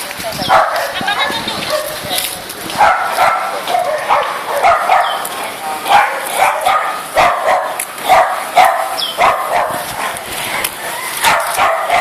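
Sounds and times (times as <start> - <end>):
dog barking: 0.5 - 1.0, 1.7 - 2.0, 2.8 - 5.2, 5.9 - 12.0.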